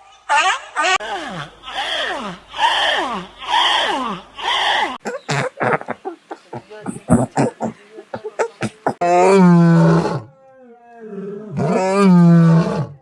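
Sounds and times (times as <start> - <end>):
animal groan: 6.9 - 7.8, 10.9 - 13.0
large animal roaring: 9.0 - 10.3, 11.0 - 13.0.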